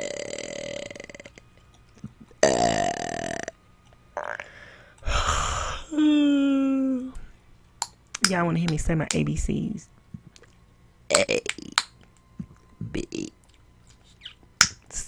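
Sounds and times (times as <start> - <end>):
woman burping: 0.0 - 1.4, 2.4 - 3.5.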